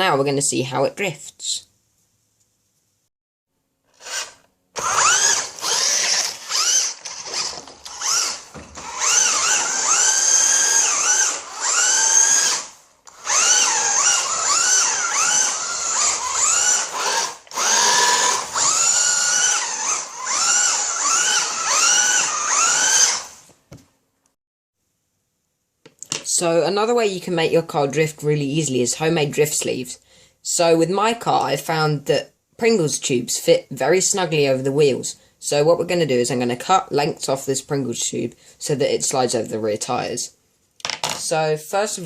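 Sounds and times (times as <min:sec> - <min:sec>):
remote control car motor whining: 0:04.0 - 0:23.4.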